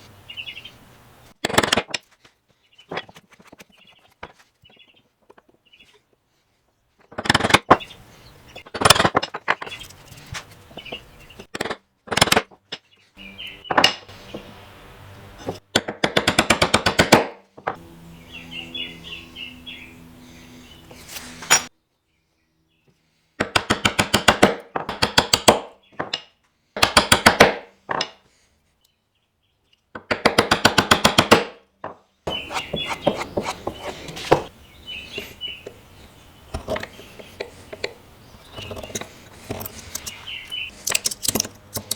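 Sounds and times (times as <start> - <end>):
rapid tool strokes on wood: 32.3 - 34.5.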